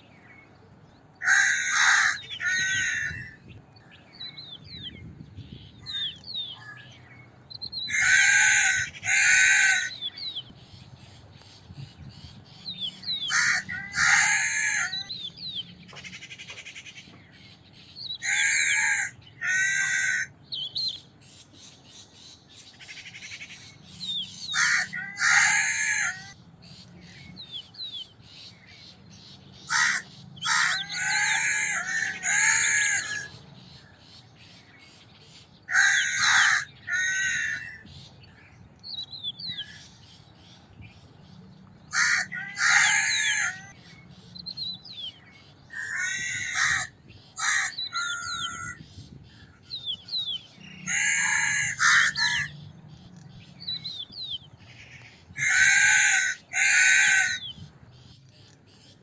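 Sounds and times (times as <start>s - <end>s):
small birds chirping: 0.0s - 59.0s
crows cawing: 1.2s - 3.4s, 7.9s - 10.0s, 13.3s - 15.1s, 18.2s - 20.3s, 24.5s - 26.4s, 29.7s - 33.3s, 35.7s - 37.8s, 41.9s - 43.7s, 45.7s - 48.8s, 50.7s - 52.6s, 54.8s - 57.5s.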